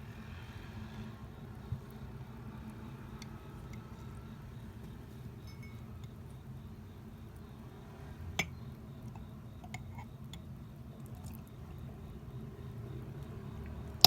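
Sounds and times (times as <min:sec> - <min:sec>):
traffic rumble: 0:00.0 - 0:14.0
glass tableware clink: 0:05.5 - 0:05.8.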